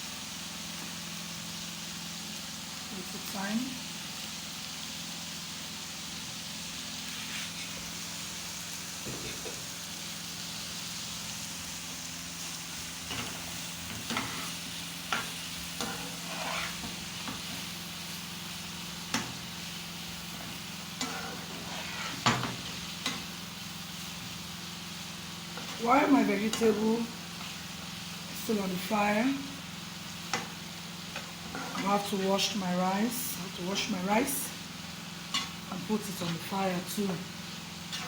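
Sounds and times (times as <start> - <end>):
vegetables sizzling in oil: 0.0 - 38.0
spoon scraping a pot: 15.8 - 17.4, 21.0 - 23.2, 31.4 - 31.9.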